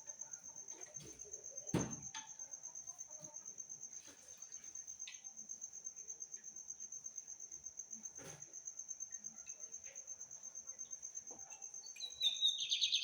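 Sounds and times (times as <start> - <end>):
insect trilling: 11.8 - 13.0.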